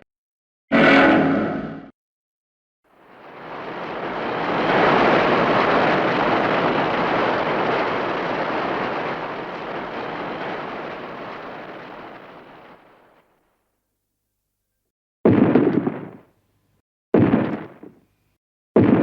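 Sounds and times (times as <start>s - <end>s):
rushing noise: 2.9s - 13.2s.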